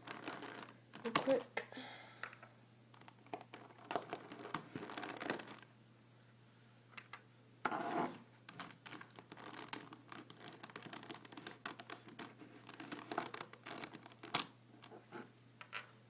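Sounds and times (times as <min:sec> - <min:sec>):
plastic pieces clicking and scraping: 0:00.0 - 0:01.4, 0:08.5 - 0:14.5.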